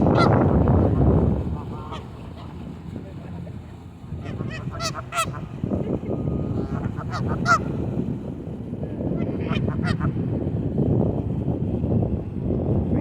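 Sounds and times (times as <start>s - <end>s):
geese honking: 0.0s - 0.5s, 4.2s - 8.0s, 9.1s - 10.2s
steady low rumble: 0.0s - 13.0s.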